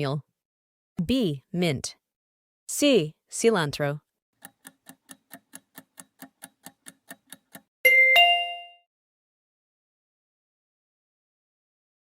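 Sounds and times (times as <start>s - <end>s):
clock ticking: 4.4s - 7.7s
bell-like ding: 7.9s - 8.8s.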